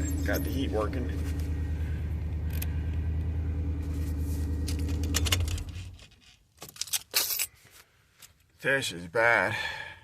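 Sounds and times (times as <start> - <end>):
keys jingling in ignition: 0.0 - 1.2, 4.5 - 7.6
vehicle engine idling: 0.0 - 6.0.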